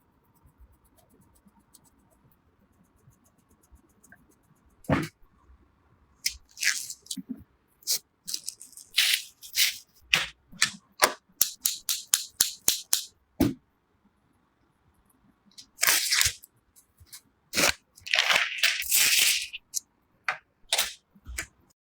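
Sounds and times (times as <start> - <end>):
sharp clicks and snaps: 6.3 - 7.2, 10.1 - 13.1
rustling and scraping: 6.3 - 10.8, 15.6 - 21.6.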